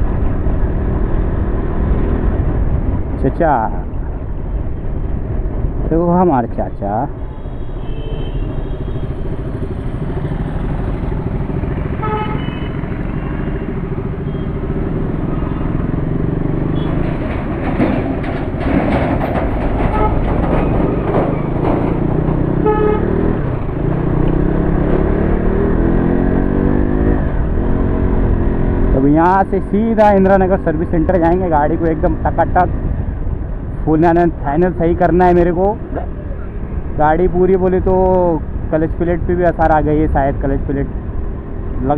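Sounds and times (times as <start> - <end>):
horn beeps: 14.2 - 14.6.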